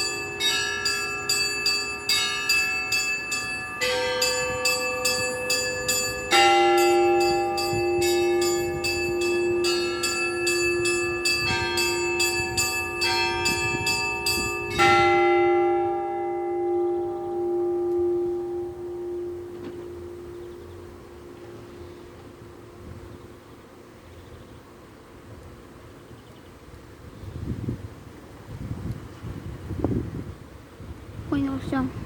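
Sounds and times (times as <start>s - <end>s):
heavy bell striking: 0.0s - 23.6s
small church bells ringing: 0.0s - 24.2s.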